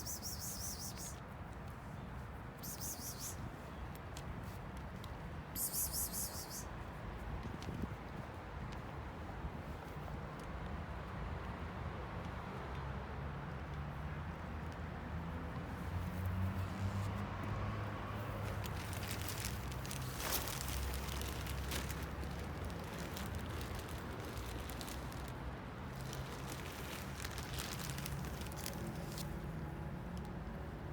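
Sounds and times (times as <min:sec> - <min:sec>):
cats crunching food: 0:18.6 - 0:29.6.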